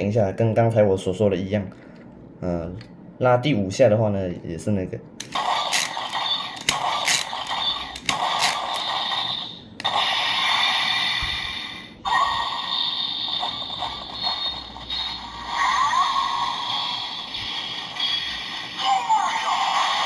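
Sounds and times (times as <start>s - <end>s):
electronic toy sound effects: 5.3s - 20.0s.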